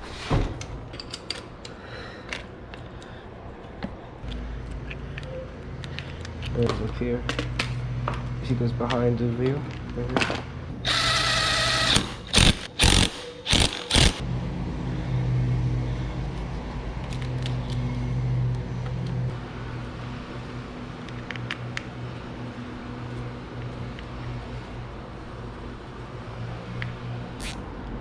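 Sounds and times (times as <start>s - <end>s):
power tool bursts: 10.8s - 14.2s.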